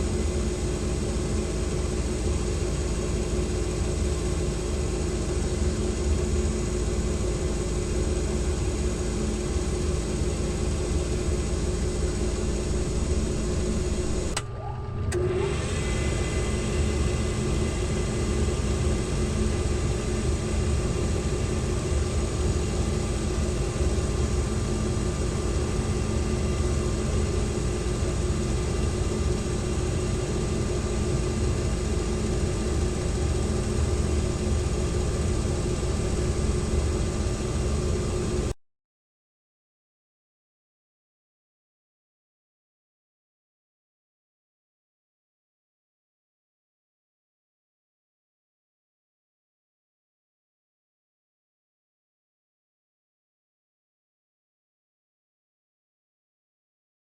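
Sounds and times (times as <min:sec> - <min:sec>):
machine motor humming: 0:00.0 - 0:38.5.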